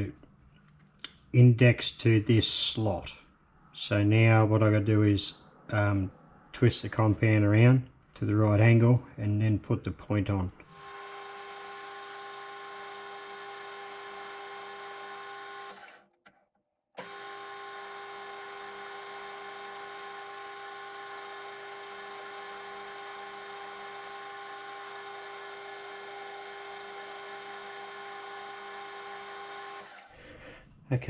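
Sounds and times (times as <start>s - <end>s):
metal lathe motor whine: 10.7s - 15.9s, 17.0s - 30.1s.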